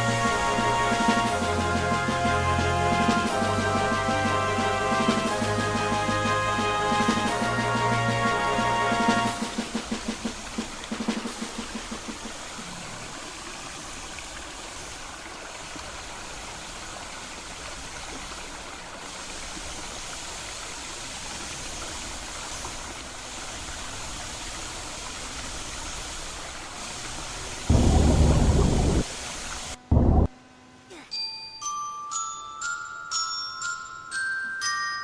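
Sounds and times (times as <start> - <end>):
rushing water: 0.0 - 29.8
loud deep rumble: 27.7 - 29.1, 29.8 - 30.3.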